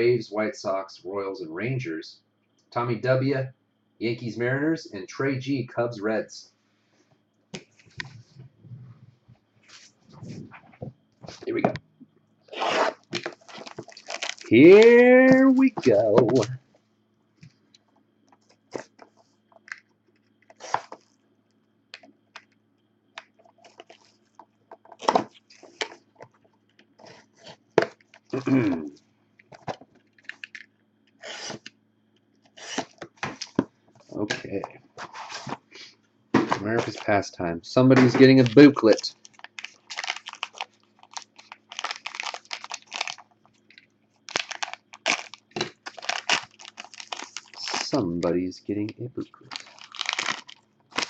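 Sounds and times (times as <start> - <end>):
wrapper and cardboard crinkling: 12.7 - 16.6, 38.1 - 48.1, 49.4 - 51.0.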